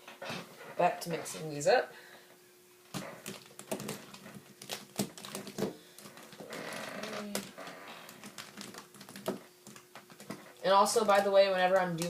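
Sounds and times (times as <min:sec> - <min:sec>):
plastic puzzle cubes clacking: 0:02.9 - 0:06.5, 0:07.1 - 0:12.0.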